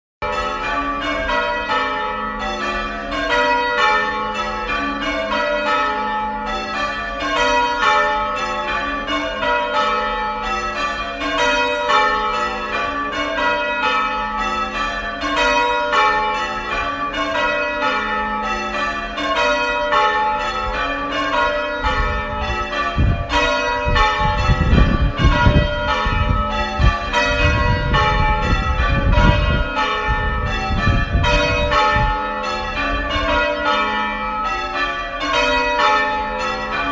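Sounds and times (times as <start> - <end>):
church bells ringing changes: 0.2 - 36.9.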